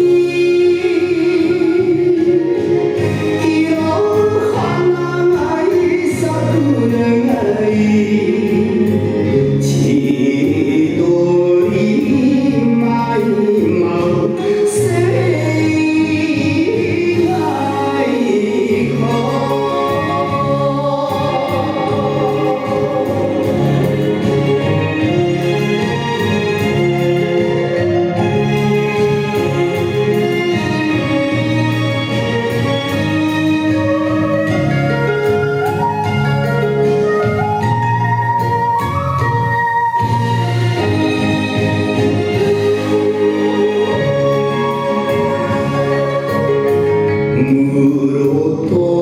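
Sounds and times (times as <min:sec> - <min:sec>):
person singing slow melody: 0:00.0 - 0:24.7, 0:42.3 - 0:49.0
sustained instrumental accompaniment: 0:00.0 - 0:49.0.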